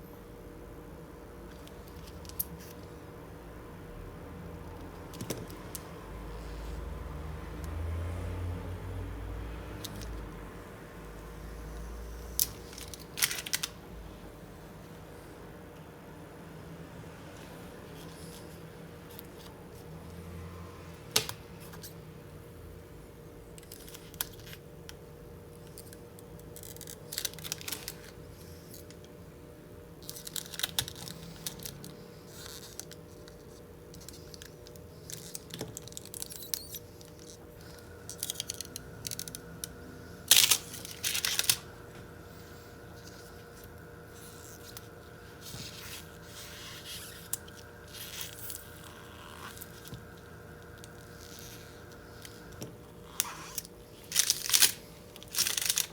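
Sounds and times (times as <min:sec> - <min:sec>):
film peeling tearing rasps: 0:45.6 - 0:49.9, 0:53.1 - 0:55.9.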